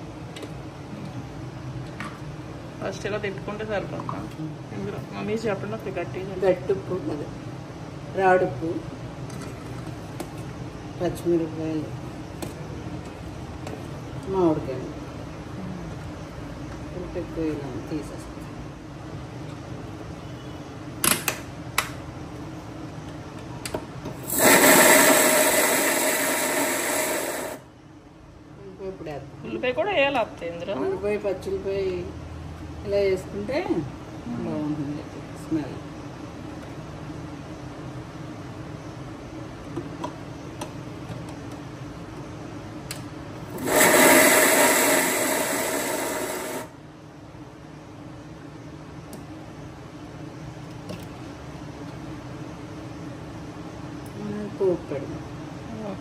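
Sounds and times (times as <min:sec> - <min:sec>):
mixer grinder running: 0:24.2 - 0:27.6, 0:43.5 - 0:46.8.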